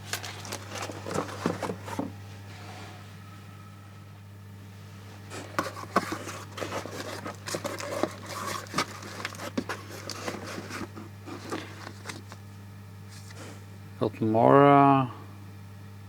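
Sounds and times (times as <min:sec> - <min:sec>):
plastic bags rustling: 0:00.0 - 0:02.1, 0:05.3 - 0:12.5
steady low hum: 0:00.0 - 0:16.0.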